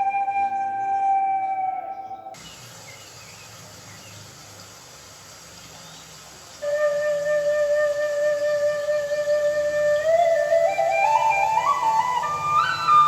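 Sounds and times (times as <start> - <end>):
bamboo flute melody: 0.0 - 2.4, 6.6 - 13.0.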